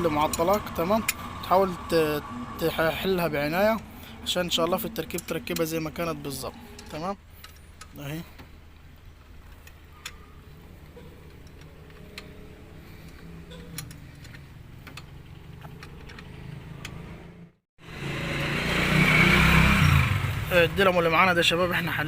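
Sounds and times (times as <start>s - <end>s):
hand tools clicking on metal: 4.8s - 6.0s.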